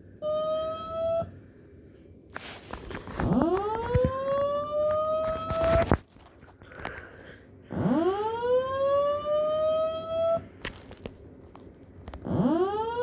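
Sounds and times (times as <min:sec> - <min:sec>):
fire alarm whoop tone: 0:00.2 - 0:01.3, 0:03.3 - 0:05.8, 0:07.7 - 0:10.5, 0:12.2 - 0:13.0.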